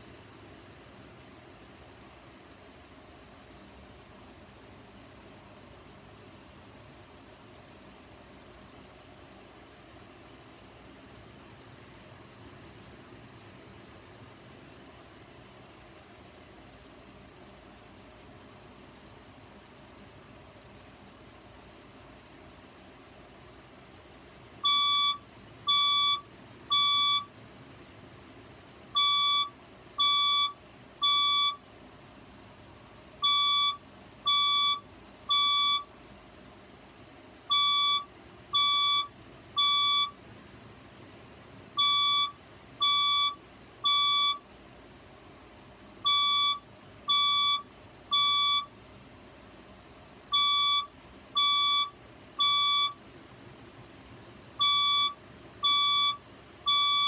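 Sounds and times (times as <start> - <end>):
fire alarm beeps: 24.6 - 27.3, 29.0 - 31.6, 33.2 - 35.9, 37.5 - 40.2, 41.8 - 44.4, 46.0 - 48.7, 50.3 - 53.0, 54.6 - 57.0.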